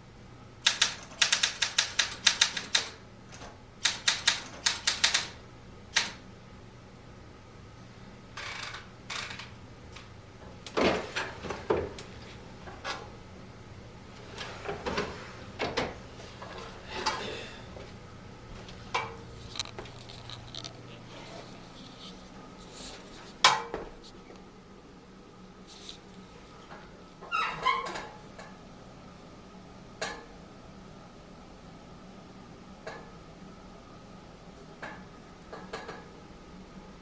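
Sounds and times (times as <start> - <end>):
typewriter mechanical clicks: 0.6 - 6.2.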